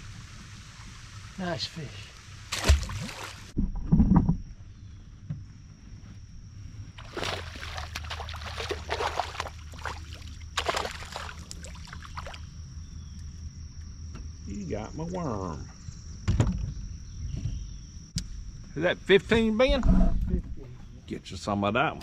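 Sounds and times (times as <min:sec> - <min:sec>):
rustling and splashing: 0:00.0 - 0:03.6, 0:06.9 - 0:12.6
steady low hum: 0:00.0 - 0:22.0
knocks and thuds in a boat: 0:16.2 - 0:17.8.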